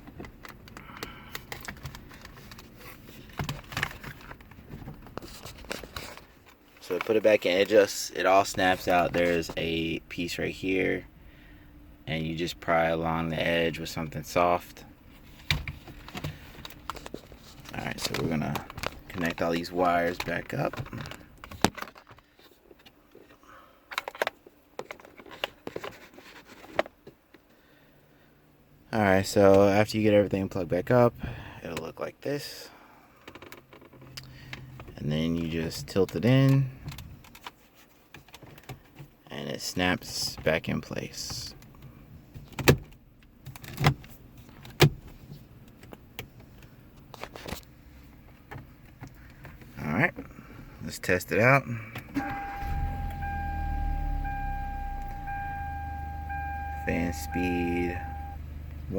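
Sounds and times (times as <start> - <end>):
light plastic handling: 8.4 - 9.7, 15.2 - 27.5.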